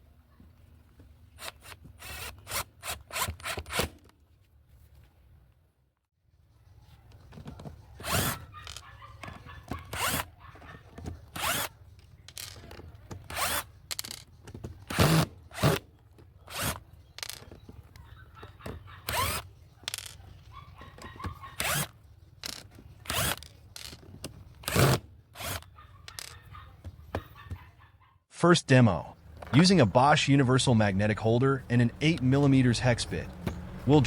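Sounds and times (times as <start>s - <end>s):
impact driver driving screws: 1.4s - 4.0s, 8.0s - 8.8s, 11.3s - 11.7s, 13.2s - 14.2s, 14.9s - 15.8s, 19.0s - 20.1s, 21.6s - 24.0s, 24.6s - 26.3s.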